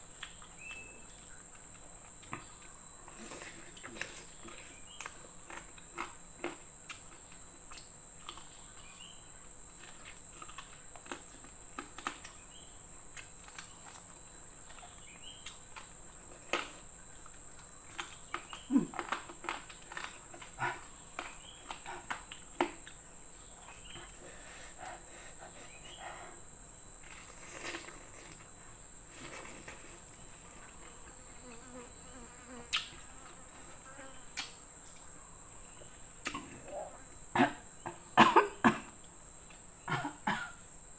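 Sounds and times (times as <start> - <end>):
chewing with wet clicks: 0.0 - 24.2, 32.7 - 33.0, 34.4 - 34.6.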